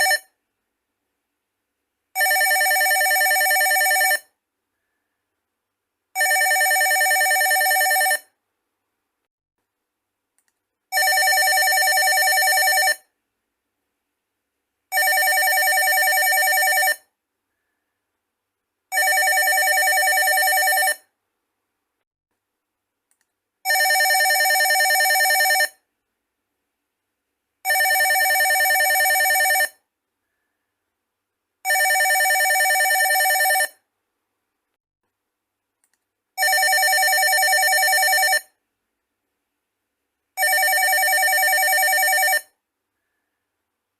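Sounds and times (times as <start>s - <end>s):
landline telephone ringing: 0.0s - 0.3s, 2.2s - 4.3s, 6.2s - 8.3s, 10.9s - 13.1s, 14.9s - 17.1s, 18.9s - 21.0s, 23.6s - 25.8s, 27.6s - 29.8s, 31.6s - 33.8s, 36.4s - 38.5s, 40.4s - 42.5s.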